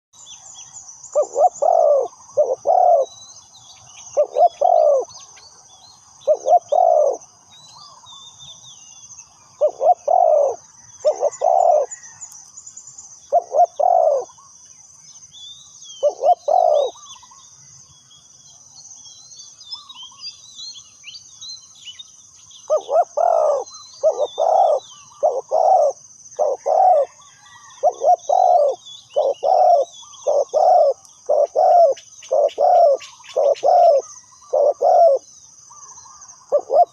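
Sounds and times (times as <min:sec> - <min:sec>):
small birds chirping faintly: 0:00.2 - 0:36.9
dove cooing: 0:01.1 - 0:03.1, 0:04.1 - 0:05.1, 0:06.2 - 0:07.2, 0:09.6 - 0:12.1, 0:13.3 - 0:14.5, 0:16.0 - 0:17.3, 0:22.7 - 0:36.9.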